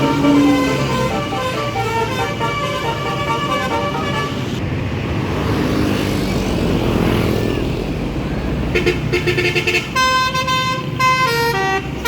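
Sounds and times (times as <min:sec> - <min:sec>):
musical air horn playing tune: 0:00.0 - 0:04.6
vehicle engines running: 0:00.0 - 0:09.1.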